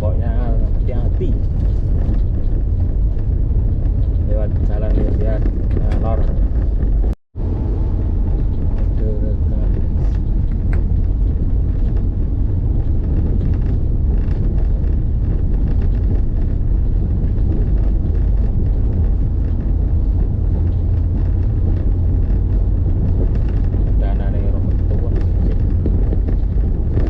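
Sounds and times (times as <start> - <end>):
vehicle rumbling on road: 0.0 - 27.0.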